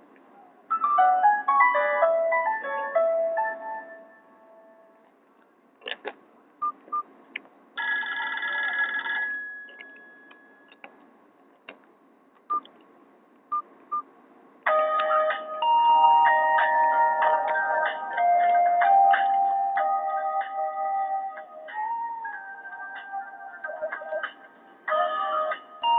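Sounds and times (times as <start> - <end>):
polyphonic ringtone melody: 0.7 - 4.8, 14.7 - 25.9.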